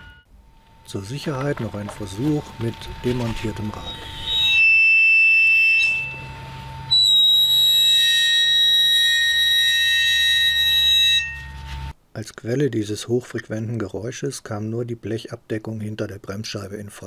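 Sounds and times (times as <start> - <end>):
high-pitched brake disc squeal: 1.8 - 11.9.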